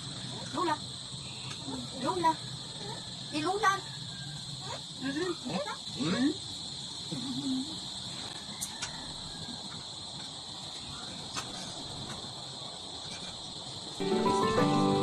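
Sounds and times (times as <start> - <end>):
crickets chirping: 0.0 - 15.0
gentle music: 14.0 - 15.0.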